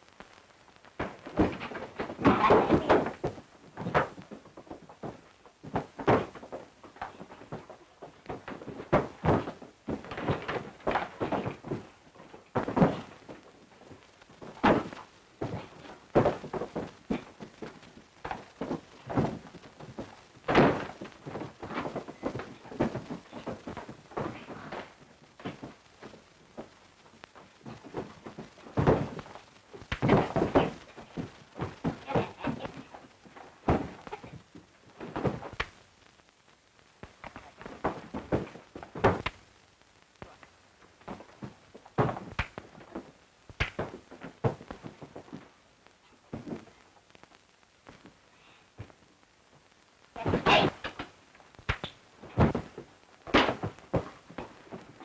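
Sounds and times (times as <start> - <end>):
irregular thuds and knocks: 0.1 - 35.8, 36.9 - 45.6, 46.2 - 48.2, 48.8 - 49.0, 49.6 - 55.0.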